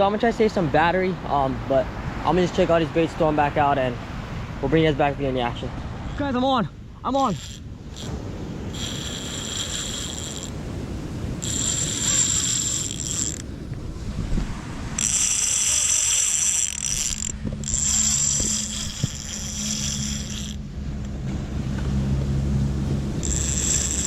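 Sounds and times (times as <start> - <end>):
fishing reel whirring and ratcheting: 7.1 - 20.8, 23.1 - 24.0.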